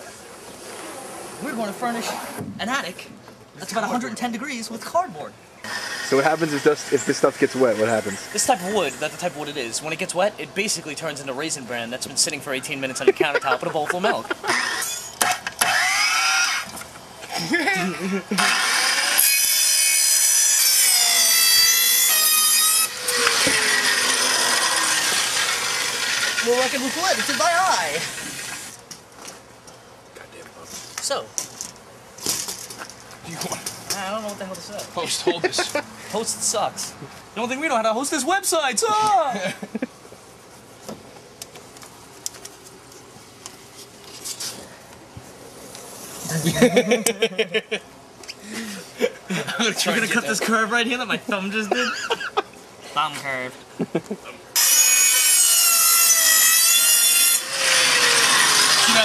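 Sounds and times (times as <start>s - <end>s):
power saw cutting board: 5.6s - 9.4s, 14.4s - 16.9s, 18.3s - 28.8s, 54.6s - 59.0s
man laughing: 12.6s - 14.8s, 17.3s - 18.6s, 35.0s - 35.9s, 39.2s - 40.0s, 46.2s - 47.9s, 48.5s - 50.3s, 51.3s - 52.5s, 53.7s - 54.5s
rustle: 39.5s - 46.7s.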